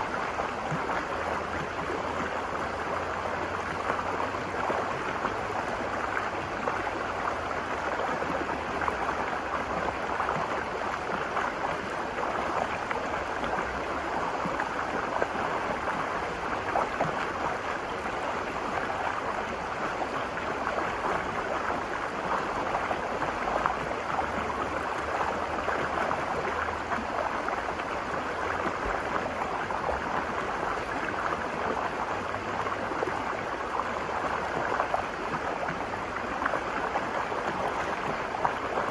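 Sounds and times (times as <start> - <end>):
river rushing over rocks: 0.0 - 38.9.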